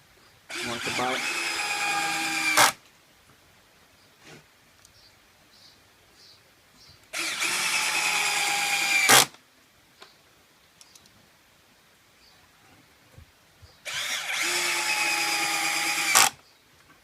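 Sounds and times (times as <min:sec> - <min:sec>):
cordless drill driving screw: 0:00.5 - 0:02.8, 0:07.2 - 0:09.3, 0:13.9 - 0:16.4.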